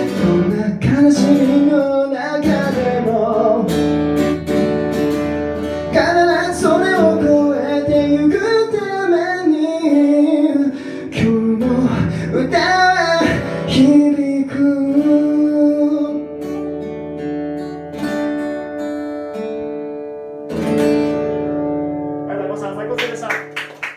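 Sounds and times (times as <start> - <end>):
person singing: 0.0 - 3.9, 5.8 - 16.8
acoustic guitar: 0.0 - 23.9.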